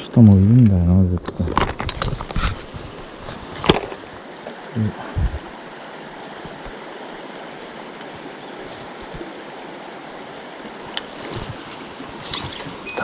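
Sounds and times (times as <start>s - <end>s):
mountain stream rushing: 1.4s - 13.0s
low thumps: 5.0s - 5.5s.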